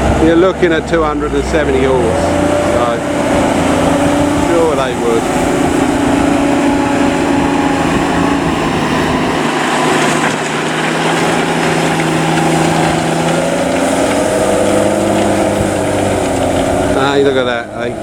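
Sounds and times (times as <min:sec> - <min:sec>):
tractor diesel engine under load: 0:00.0 - 0:18.0.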